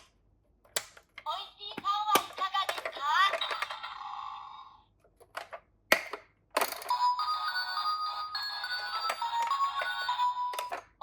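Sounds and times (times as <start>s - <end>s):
electronic toy beeping tune: 6.9s - 10.8s.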